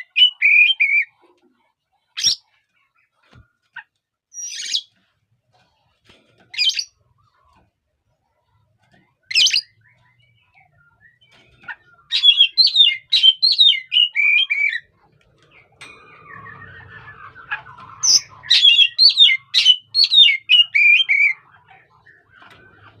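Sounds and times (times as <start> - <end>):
bird chirping song: 0.0 - 1.3, 2.0 - 5.0, 6.5 - 23.0
faint low falling sound: 14.9 - 19.5
bird harsh call: 15.8 - 22.5.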